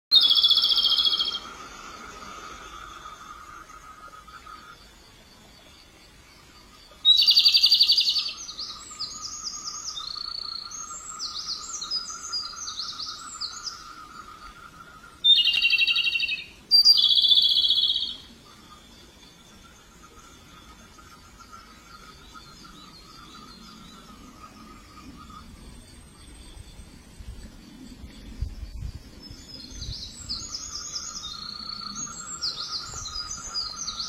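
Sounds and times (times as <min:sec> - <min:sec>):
robin singing: 0:00.1 - 0:02.0, 0:06.4 - 0:19.3, 0:27.8 - 0:34.0.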